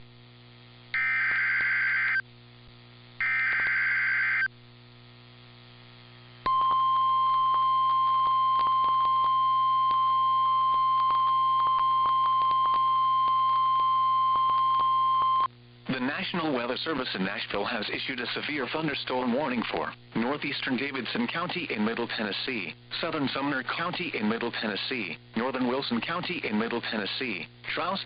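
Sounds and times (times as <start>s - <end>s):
steady warning alarm tone: 1.0s - 2.2s, 3.2s - 4.5s, 6.5s - 15.5s
buzzy digital data tones: 3.2s - 4.5s
radio static crackle: 7.3s - 28.0s.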